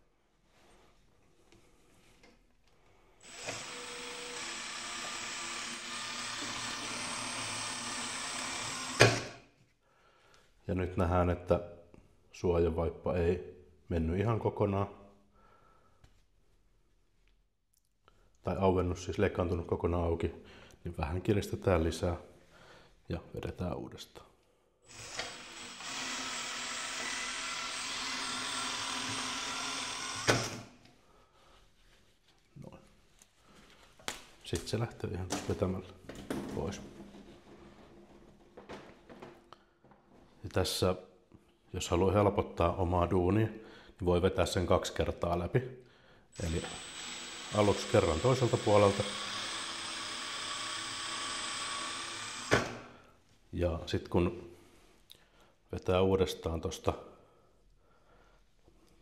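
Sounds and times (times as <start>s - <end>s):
electric drill whining: 3.2s - 9.3s, 24.9s - 30.7s, 46.4s - 52.8s.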